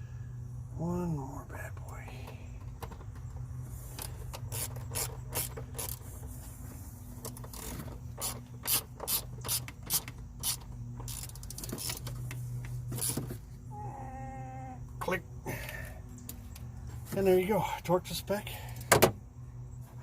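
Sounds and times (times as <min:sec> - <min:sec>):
ratchet wrench clicking: 0:03.9 - 0:06.1, 0:07.3 - 0:12.4.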